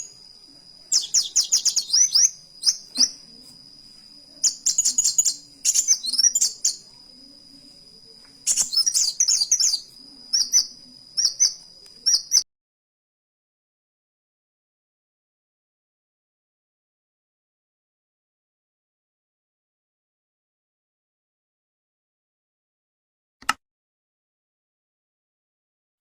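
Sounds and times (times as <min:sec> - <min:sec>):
bird chirping: 0:00.0 - 0:07.7, 0:08.4 - 0:12.4
thin steady high tone: 0:00.0 - 0:12.2.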